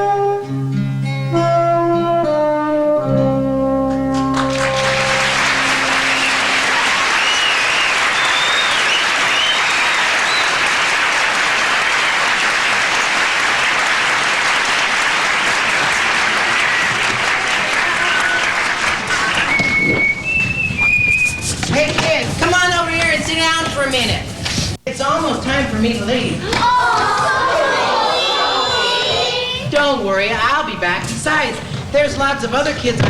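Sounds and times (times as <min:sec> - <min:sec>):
audience clapping: 0:04.1 - 0:20.8
high whistles: 0:05.0 - 0:11.2, 0:19.0 - 0:21.6.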